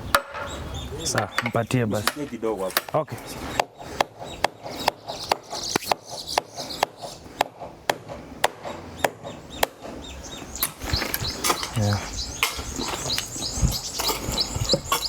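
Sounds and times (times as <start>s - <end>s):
tool chopping wood: 1.4s - 10.0s.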